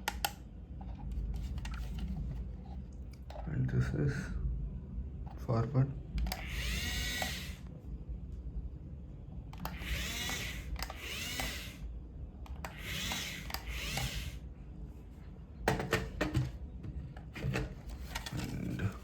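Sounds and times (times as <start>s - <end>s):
toy electric motors whirring: 6.2s - 7.7s, 9.6s - 11.9s, 12.5s - 14.4s.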